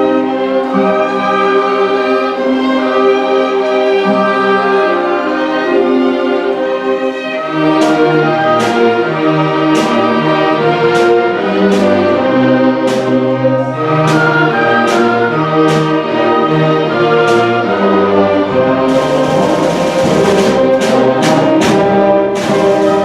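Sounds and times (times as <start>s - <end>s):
strings and brass sustained notes: 0.0s - 23.0s
sharp percussion stroke: 18.9s - 23.0s.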